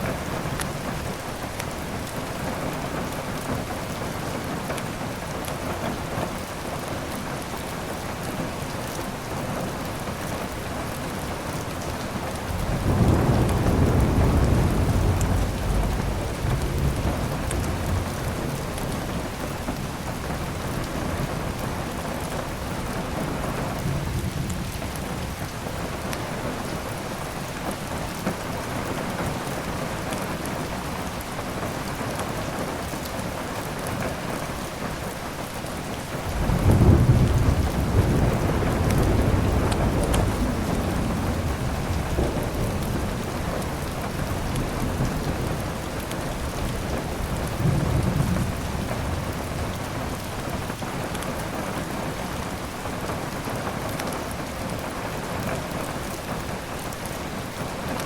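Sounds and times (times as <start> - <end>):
heavy rain falling: 0.0 - 58.0
thunder rumbling: 12.1 - 25.5, 36.2 - 53.0.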